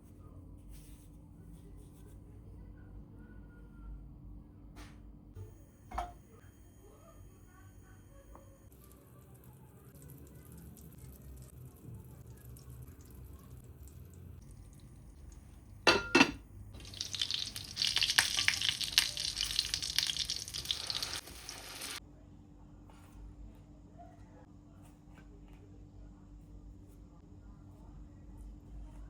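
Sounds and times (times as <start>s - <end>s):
oil sizzling in a pan: 12.5s - 22.0s.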